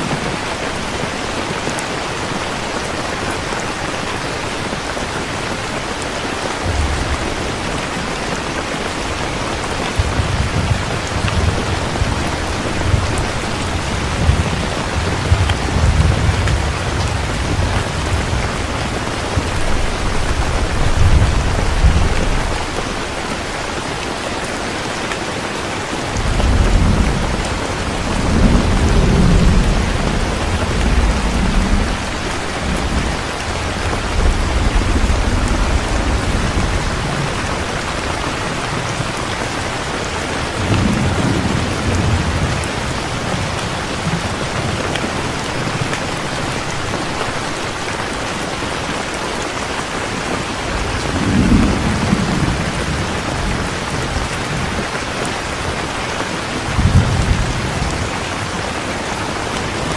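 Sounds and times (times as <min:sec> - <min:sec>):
heavy rain falling: 0:00.0 - 0:59.9
thunder rumbling: 0:06.6 - 0:23.7, 0:25.9 - 0:46.0, 0:50.5 - 0:55.0.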